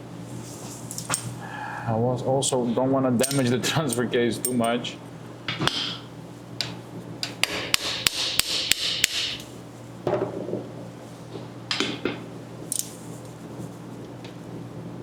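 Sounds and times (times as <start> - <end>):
hammer striking metal: 7.4 - 9.4.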